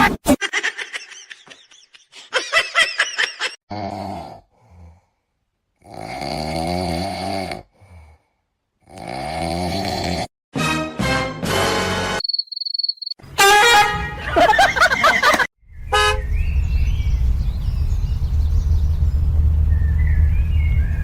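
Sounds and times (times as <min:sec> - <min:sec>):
pet snoring: 0:05.8 - 0:07.7, 0:08.8 - 0:10.3.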